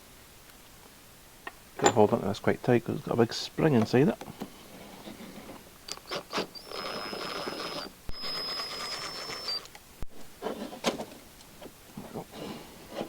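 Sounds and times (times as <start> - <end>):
electric power tool whining: 5.9 - 9.7.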